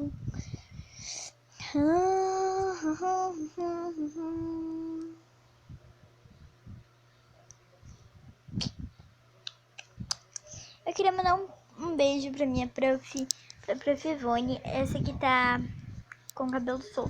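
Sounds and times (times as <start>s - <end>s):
girl humming a tune: 1.6s - 5.2s.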